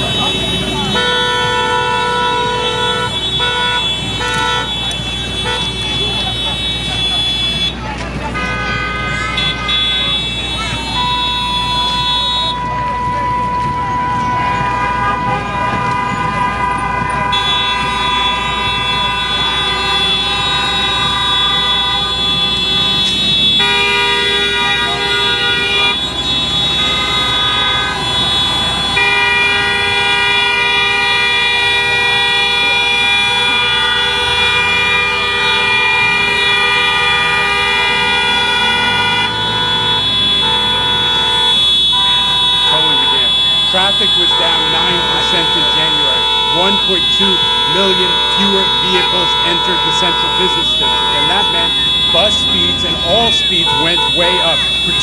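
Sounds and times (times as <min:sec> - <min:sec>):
car horns held down: 0:00.0 - 0:07.8.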